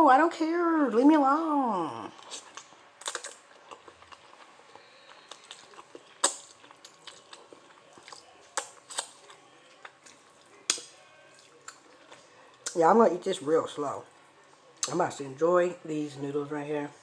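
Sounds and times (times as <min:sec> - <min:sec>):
wet chewing and mouth sounds: 0:02.0 - 0:12.9.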